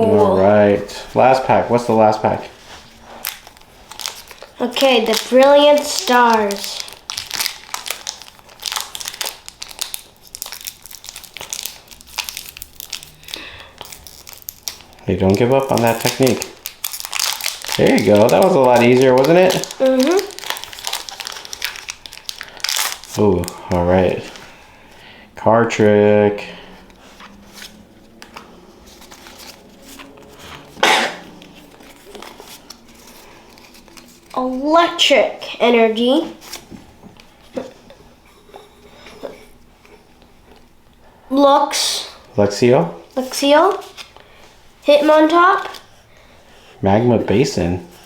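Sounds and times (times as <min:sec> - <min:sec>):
cards and wrappers rustling: 0:00.0 - 0:40.7, 0:43.1 - 0:46.0
foil pack crinkling: 0:01.2 - 0:25.0, 0:26.6 - 0:37.7.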